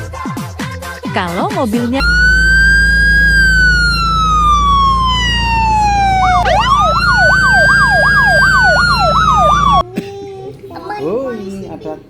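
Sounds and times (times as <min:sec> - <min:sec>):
emergency siren wailing and yelping: 0:02.0 - 0:09.8
steady low hum: 0:02.0 - 0:09.8.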